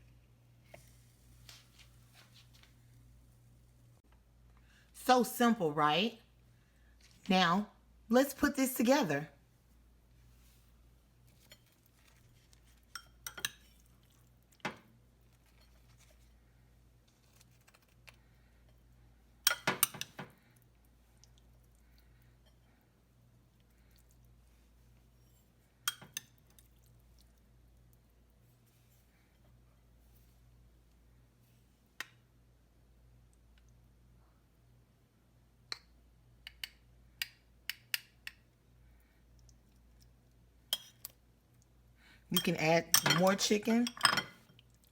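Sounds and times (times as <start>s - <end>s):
faint steady hum: 0.0s - 44.9s
dishes and utensils clinking: 42.4s - 44.5s.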